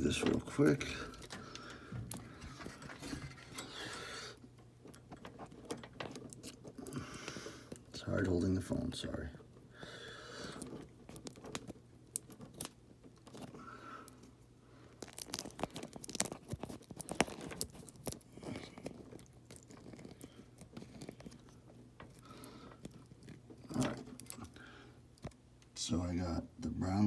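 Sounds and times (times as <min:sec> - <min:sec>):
handling noise: 0:00.0 - 0:08.0
wires clicking and crackling: 0:00.0 - 0:09.6, 0:10.4 - 0:25.9.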